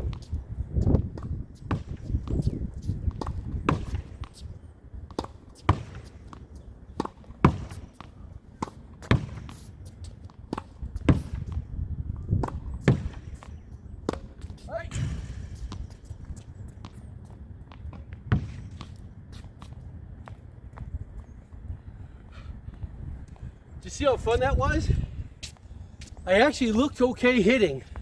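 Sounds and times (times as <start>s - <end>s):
ball bouncing on court: 5.1s - 6.4s, 7.0s - 9.6s, 10.3s - 11.6s, 12.3s - 16.0s, 17.7s - 19.0s
tennis ball hitting wall: 7.0s - 7.8s, 8.6s - 9.6s, 12.3s - 13.2s.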